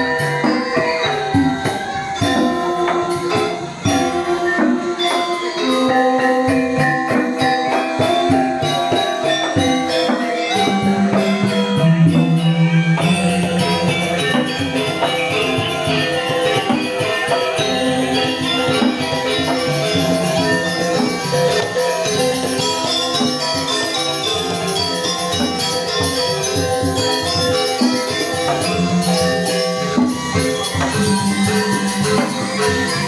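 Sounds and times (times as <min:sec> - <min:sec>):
metallophones ringing: 0:00.0 - 0:33.0
small cymbals shimmering: 0:00.0 - 0:33.0
deep gong tone: 0:10.7 - 0:15.3.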